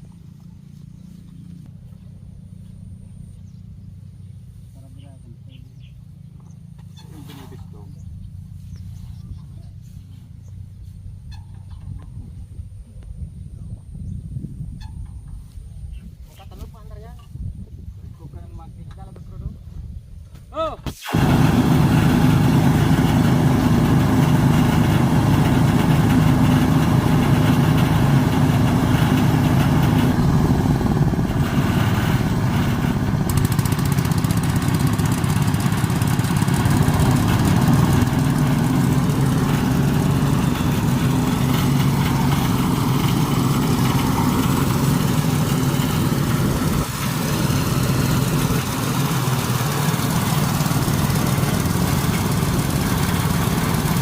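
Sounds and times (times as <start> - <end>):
small engine running: 21.0 - 54.0.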